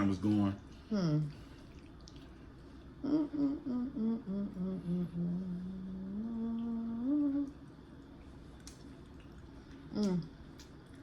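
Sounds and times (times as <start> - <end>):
person humming while eating: 3.0 - 7.6, 9.9 - 10.4.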